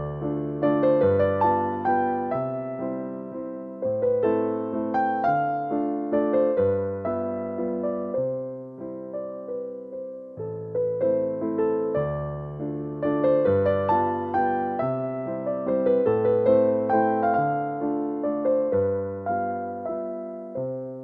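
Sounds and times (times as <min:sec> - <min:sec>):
gentle piano melody: 0:00.0 - 0:21.0.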